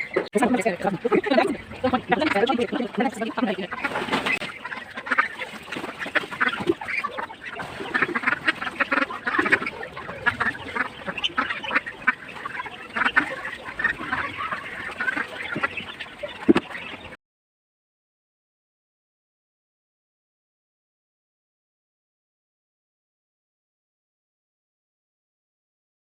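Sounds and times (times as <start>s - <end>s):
ducks quacking: 0.0s - 17.2s.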